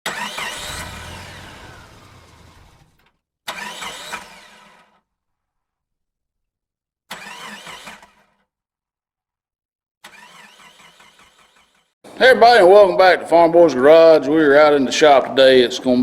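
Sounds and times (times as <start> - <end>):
vehicle engine sounds: 0.1 - 4.8.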